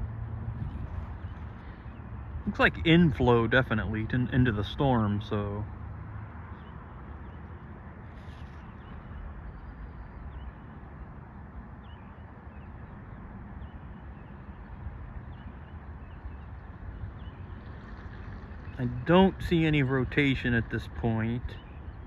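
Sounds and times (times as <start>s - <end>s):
steady low rumble: 0.0s - 5.9s, 16.5s - 22.0s.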